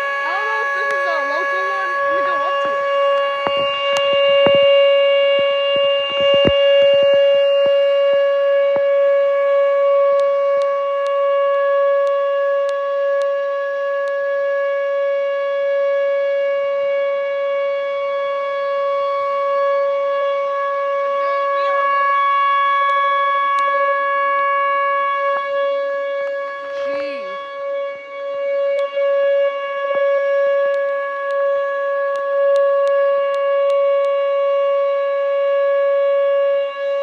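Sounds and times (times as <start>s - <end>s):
outdoor warning siren steady tone: 0.0s - 37.0s.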